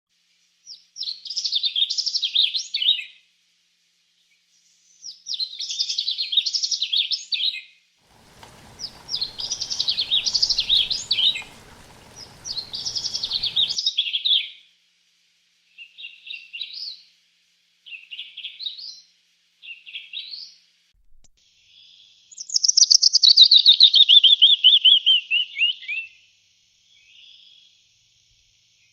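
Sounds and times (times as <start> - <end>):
songbird chirping: 8.1 - 13.8.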